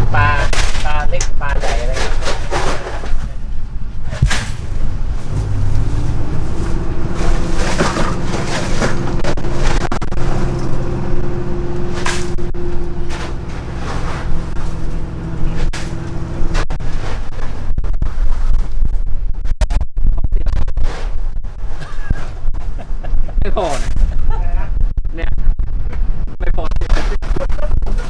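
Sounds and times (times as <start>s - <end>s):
water splashes: 0.0s - 16.6s
boat engine running: 0.0s - 18.7s
sharp knocks: 4.1s - 6.1s.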